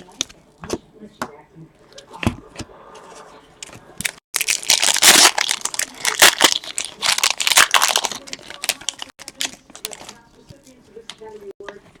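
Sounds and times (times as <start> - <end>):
wrapper being torn and crinkled: 4.4 - 10.2.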